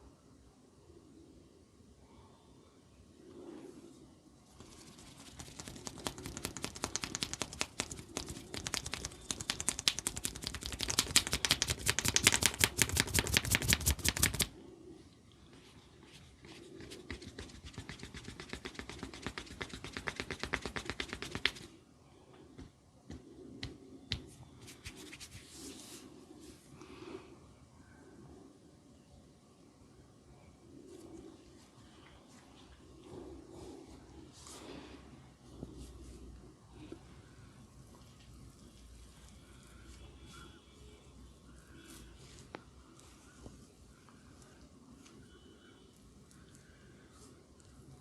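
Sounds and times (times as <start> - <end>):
hands tapping on a head: 5.2 - 14.5, 16.8 - 21.7, 22.6 - 24.3.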